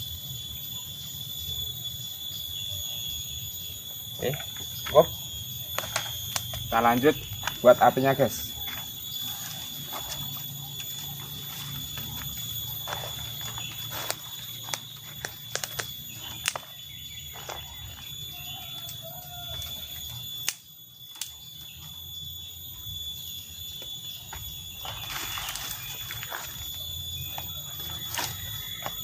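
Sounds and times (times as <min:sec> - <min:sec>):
high-pitched whine: 0:00.0 - 0:29.0
twigs snapping and clicking: 0:05.7 - 0:06.7, 0:12.9 - 0:17.7, 0:18.7 - 0:21.5.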